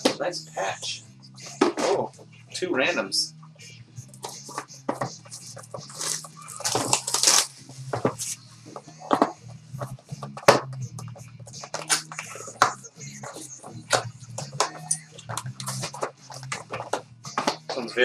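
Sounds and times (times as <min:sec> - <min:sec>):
packaging rustling and crinkling: 0:05.9 - 0:08.2.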